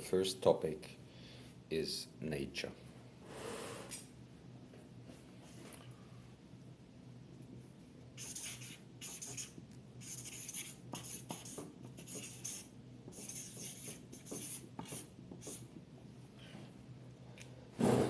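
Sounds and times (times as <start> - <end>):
pen scratching on paper: 8.2 - 15.7.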